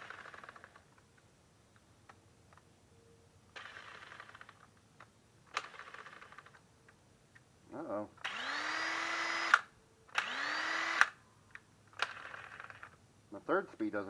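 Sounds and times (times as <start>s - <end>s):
rapid mechanical clicking: 12.0s - 13.0s.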